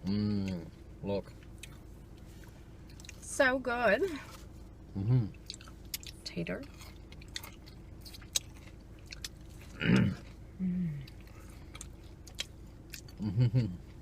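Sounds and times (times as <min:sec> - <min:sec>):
hummed murmurs: 0:00.0 - 0:00.8, 0:04.9 - 0:05.4, 0:13.2 - 0:13.9
chewing with mouth clicks: 0:00.3 - 0:03.2, 0:05.2 - 0:13.3.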